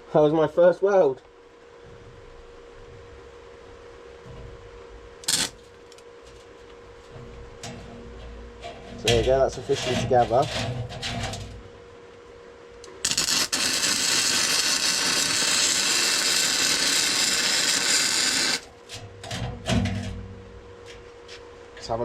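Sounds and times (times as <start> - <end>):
faint steady hum: 0.0 - 22.0
welder arc crackling hiss: 5.2 - 6.0, 12.9 - 18.7.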